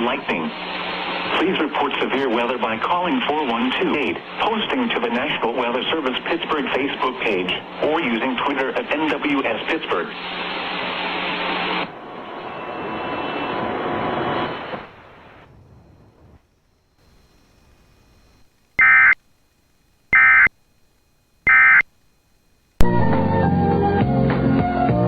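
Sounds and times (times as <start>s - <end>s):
radio receiver hiss: 0.0s - 12.0s, 14.3s - 23.0s
digital data tone bursts: 18.8s - 19.2s, 20.1s - 20.5s, 21.4s - 21.9s
music: 22.8s - 25.0s.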